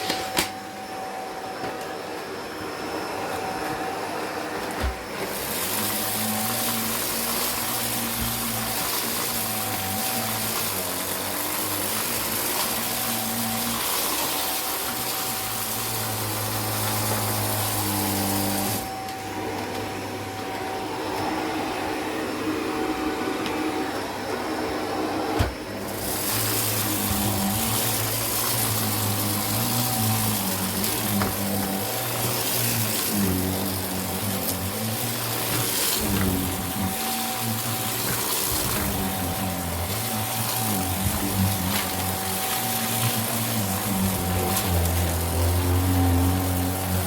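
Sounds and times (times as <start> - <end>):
vacuum cleaner running: 0.0 - 47.0.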